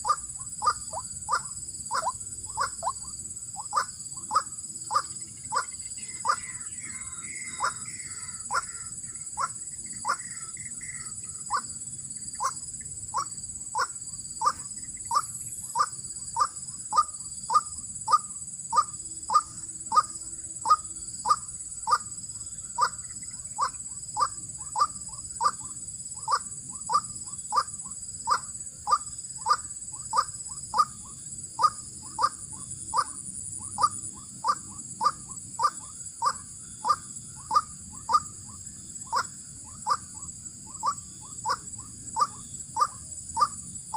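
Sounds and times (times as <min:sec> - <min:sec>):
waterhen calling: 0:00.0 - 0:03.0.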